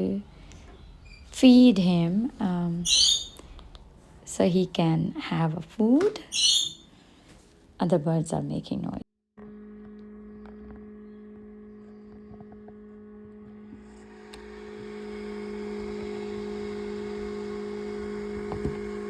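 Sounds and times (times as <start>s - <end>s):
two-tone steady hum: 9.4s - 19.0s.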